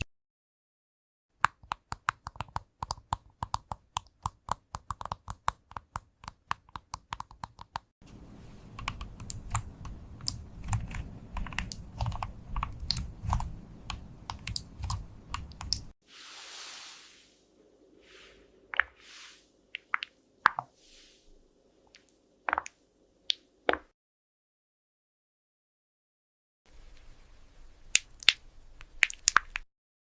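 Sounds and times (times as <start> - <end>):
heavy keystrokes: 8.7 - 15.9
keyboard key clicks: 8.8 - 15.9
brief hiss: 16.1 - 17.4.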